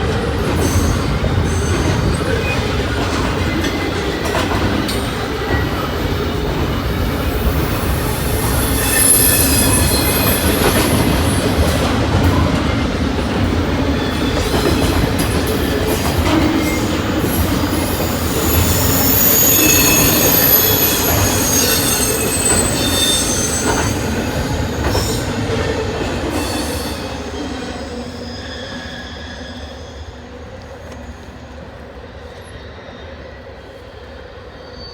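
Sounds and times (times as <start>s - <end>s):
train wheels rumbling on rails: 0.0s - 34.5s
high-pitched wheel squeal: 8.0s - 11.2s, 17.3s - 24.2s.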